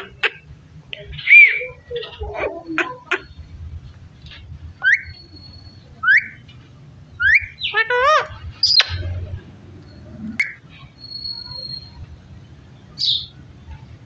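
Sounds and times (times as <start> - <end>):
parrot whistling: 1.2 - 1.7, 4.8 - 6.4, 7.2 - 9.0, 10.4 - 12.0.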